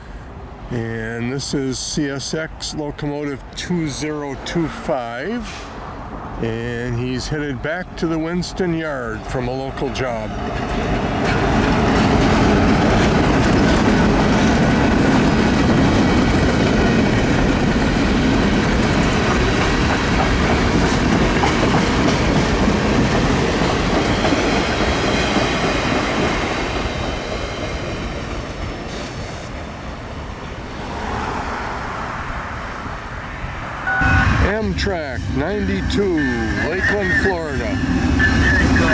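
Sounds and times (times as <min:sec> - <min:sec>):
train wheels clattering: 0:10.3 - 0:29.6.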